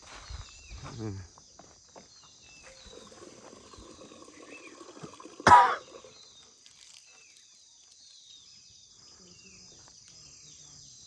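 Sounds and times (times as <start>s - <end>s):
insect chirring: 2.6s - 8.3s
loud cough-like sound: 5.4s - 6.0s.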